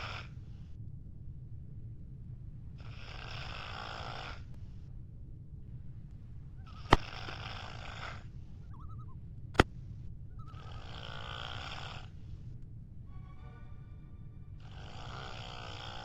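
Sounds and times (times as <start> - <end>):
sharp clicks: 6.9 - 7.4.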